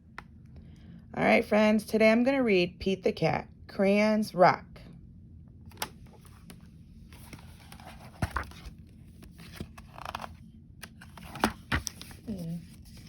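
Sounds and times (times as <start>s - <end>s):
paper rustling: 7.1s - 13.0s.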